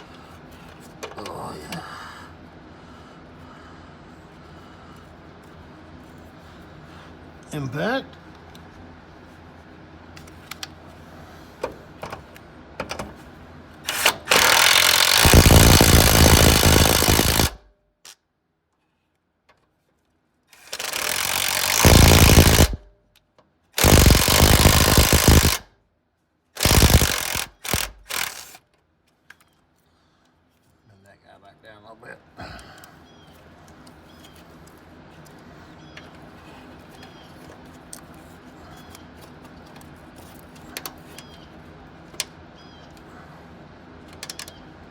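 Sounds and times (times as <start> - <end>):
impact wrench hammering: 13.9 - 17.6, 20.6 - 22.8, 23.8 - 25.6, 26.6 - 28.6.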